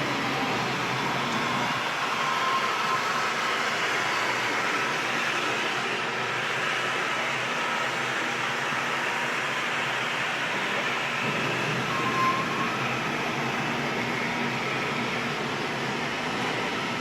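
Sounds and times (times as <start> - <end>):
floor scrubber motors running: 0.0 - 17.0
brief high squeak: 11.8 - 12.8.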